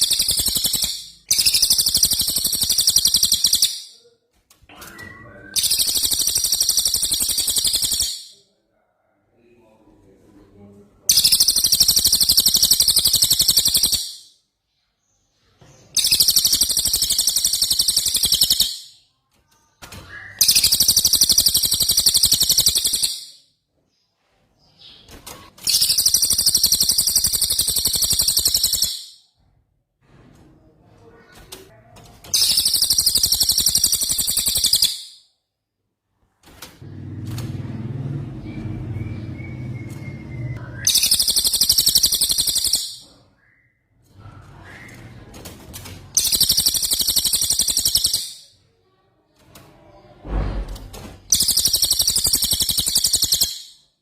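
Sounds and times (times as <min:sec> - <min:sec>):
songbird rapid rolling trill: 0:05.6 - 0:08.3, 0:16.0 - 0:18.8, 0:38.5 - 0:43.0, 0:46.2 - 0:48.4, 0:51.3 - 0:53.7.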